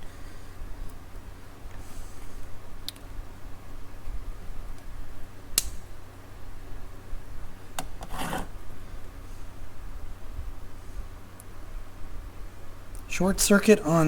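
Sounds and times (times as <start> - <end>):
short scraping rub: 8.0 - 8.5.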